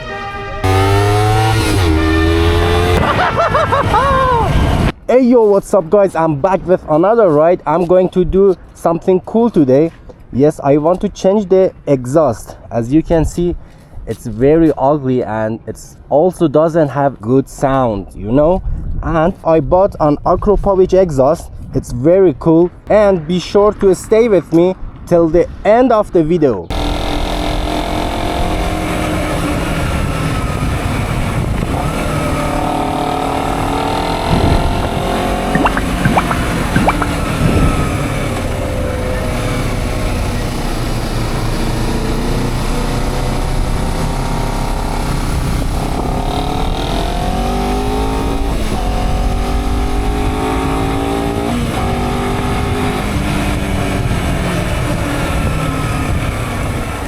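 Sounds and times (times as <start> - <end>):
motorcycle engine revving: 0.6 - 3.2, 26.7 - 57.0.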